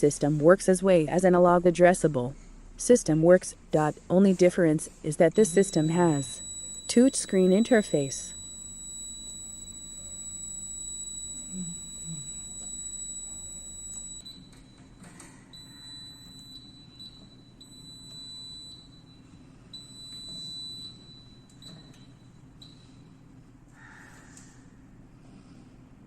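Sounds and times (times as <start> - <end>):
alarm panel buzzer: 5.1 - 14.7, 15.5 - 23.0.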